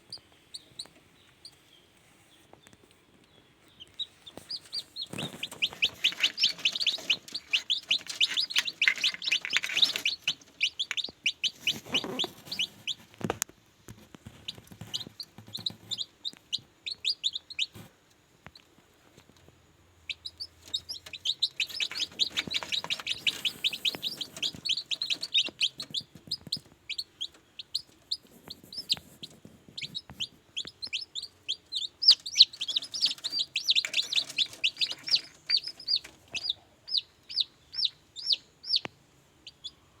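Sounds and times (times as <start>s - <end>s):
chicks peeping: 0.0s - 40.0s.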